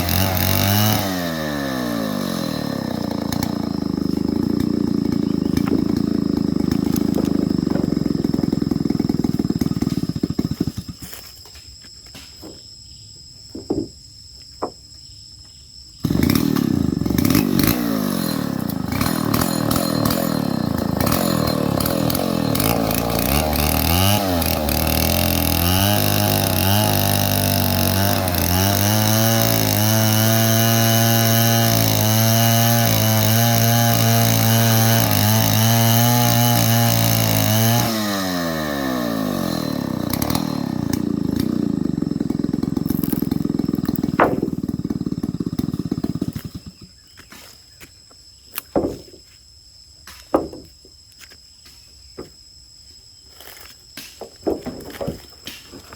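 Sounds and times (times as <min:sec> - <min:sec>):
chainsaw revving and idling: 0:00.0 - 0:11.5, 0:16.0 - 0:49.1, 0:50.3 - 0:51.4
short knocks: 0:12.1 - 0:12.7, 0:13.5 - 0:14.8, 0:43.9 - 0:44.7, 0:48.6 - 0:49.3, 0:50.1 - 0:50.9, 0:54.0 - 0:55.9.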